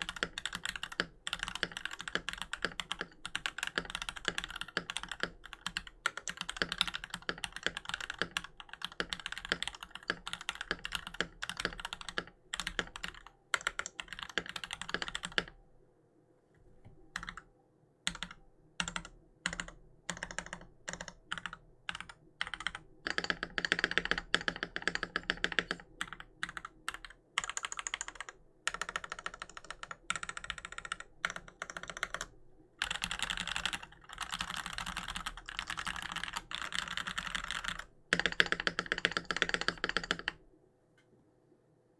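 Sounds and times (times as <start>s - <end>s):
mechanical keyboard typing: 0.0s - 15.6s, 18.1s - 40.4s.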